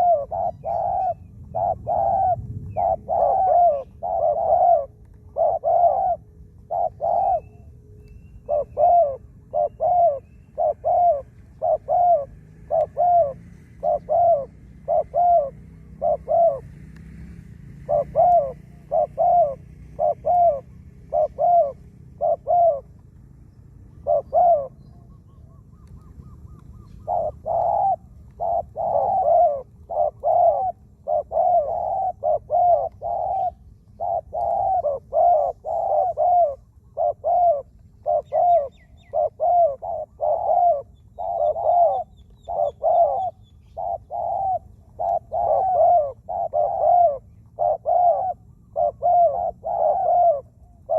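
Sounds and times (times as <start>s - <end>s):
doves cooing: 0.0s - 50.9s
small bird chirping: 17.9s - 50.9s.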